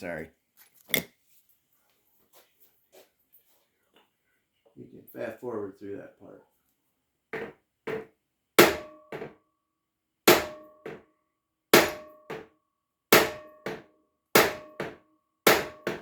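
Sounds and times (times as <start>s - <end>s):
hammer striking metal: 7.4s - 9.4s, 10.3s - 11.0s, 11.8s - 12.5s, 13.2s - 16.0s
hammer rebound hit: 11.8s - 12.5s, 13.2s - 16.0s.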